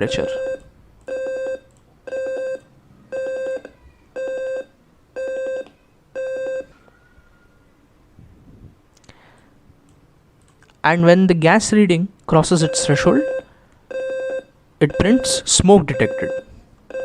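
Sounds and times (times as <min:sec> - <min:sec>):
alarm buzzing beeps: 0:00.0 - 0:06.7, 0:12.6 - 0:17.0.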